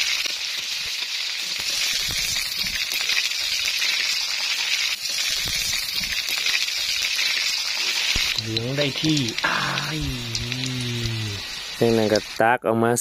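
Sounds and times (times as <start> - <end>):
hot oil sizzling in a pan: 0.0 - 12.6.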